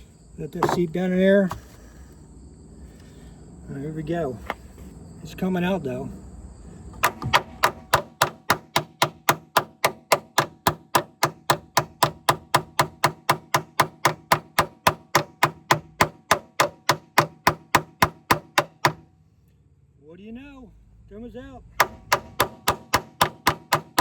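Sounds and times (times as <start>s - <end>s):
hammer striking metal: 7.0s - 19.0s, 21.8s - 24.0s.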